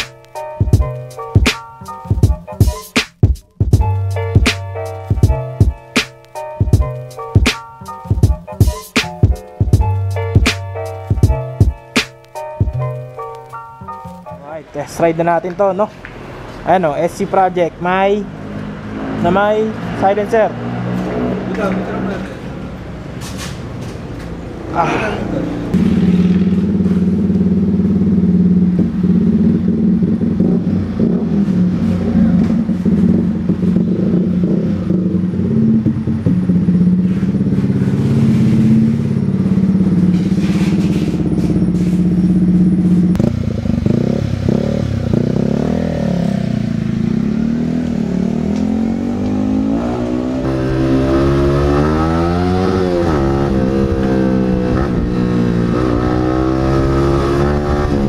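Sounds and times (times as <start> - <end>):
motorcycle engine revving: 18.1 - 22.6, 25.3 - 58.0.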